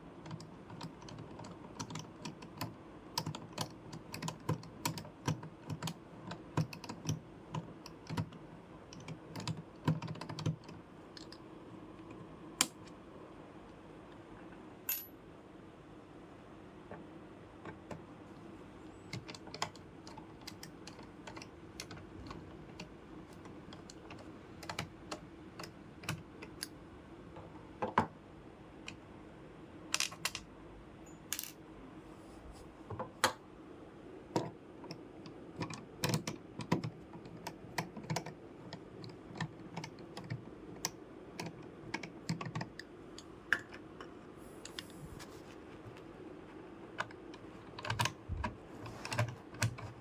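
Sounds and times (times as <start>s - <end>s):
faint steady hum: 0.0s - 50.0s
clicks and taps on computer parts: 0.2s - 11.4s, 18.9s - 28.2s, 32.9s - 33.4s, 34.3s - 44.9s, 46.9s - 50.0s.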